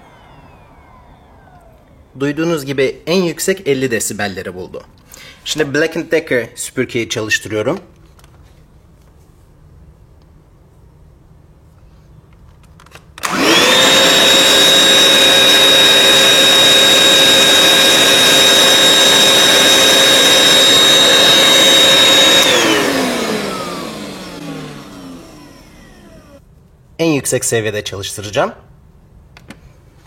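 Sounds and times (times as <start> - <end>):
vacuum cleaner motor whining: 0.0 - 2.9, 13.2 - 26.4.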